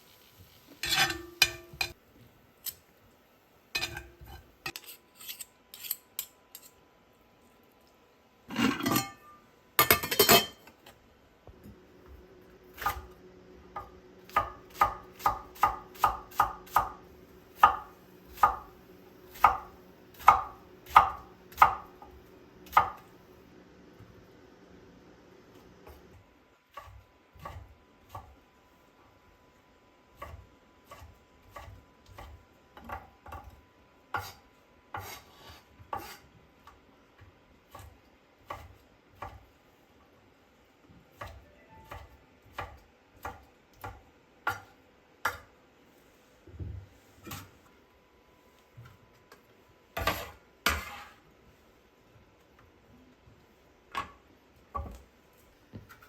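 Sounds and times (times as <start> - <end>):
dishes clattering: 8.5 - 9.2, 9.8 - 10.6
dishes and utensils knocking: 9.8 - 10.6.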